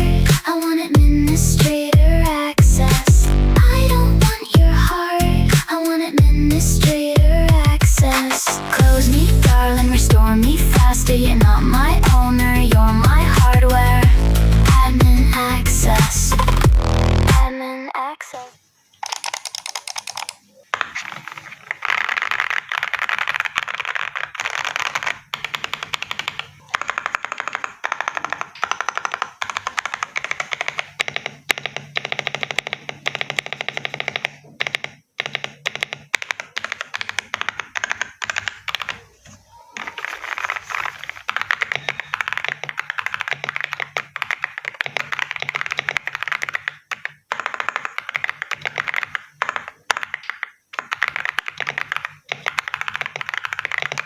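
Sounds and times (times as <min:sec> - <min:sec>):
typing on mechanical keyboard: 0:19.0 - 0:39.2, 0:39.8 - 0:54.0.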